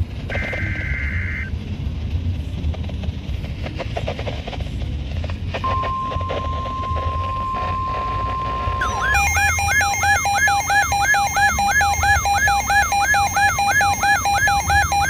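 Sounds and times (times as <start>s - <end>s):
car road rumble: 0.0s - 9.0s
radio static crackling: 0.2s - 1.5s, 5.5s - 15.0s
steady alert tone: 7.8s - 15.0s.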